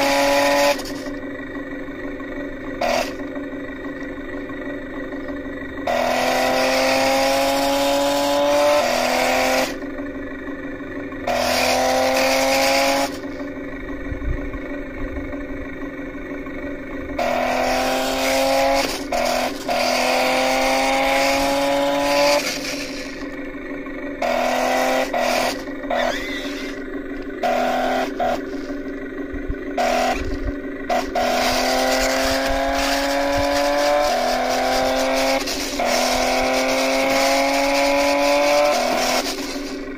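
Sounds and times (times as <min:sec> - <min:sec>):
toy car electric motors whining: 0:00.0 - 0:01.2, 0:18.8 - 0:20.0, 0:22.3 - 0:23.4, 0:25.0 - 0:28.9, 0:29.8 - 0:39.9.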